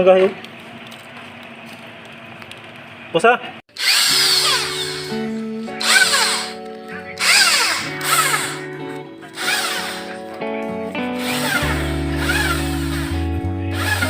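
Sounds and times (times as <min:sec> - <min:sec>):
power drill spinning: 0:03.7 - 0:10.4, 0:11.0 - 0:14.0
background music with chords: 0:04.5 - 0:14.0.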